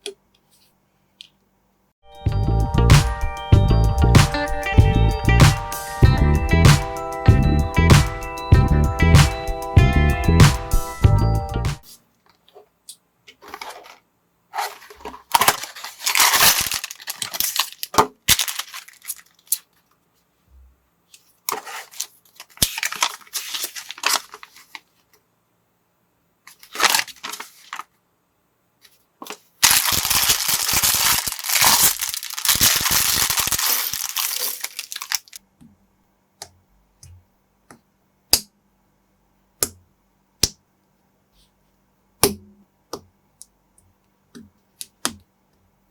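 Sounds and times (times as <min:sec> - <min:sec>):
plastic packaging crinkling and tearing: 0:14.6 - 0:19.9, 0:21.5 - 0:25.0, 0:26.5 - 0:27.9, 0:29.6 - 0:35.4.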